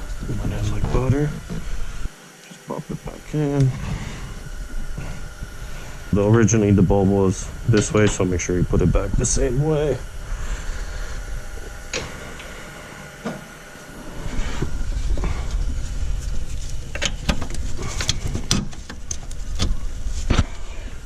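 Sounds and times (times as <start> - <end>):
steady low rumble: 3.0 - 13.0, 14.0 - 21.0.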